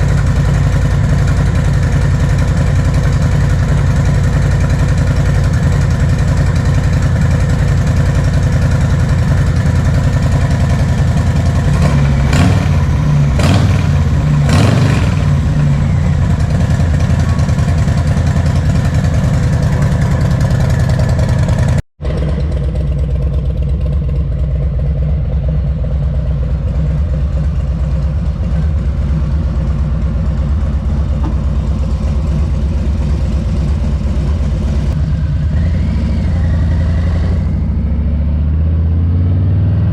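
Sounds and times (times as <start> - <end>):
motorcycle engine idling: 0.0 - 37.9.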